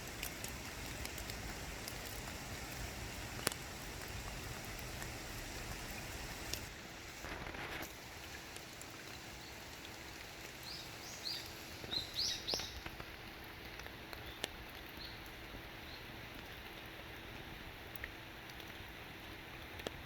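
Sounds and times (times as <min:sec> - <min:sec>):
water drops pattering: 0:00.0 - 0:06.7
small bird chirping: 0:10.6 - 0:12.8.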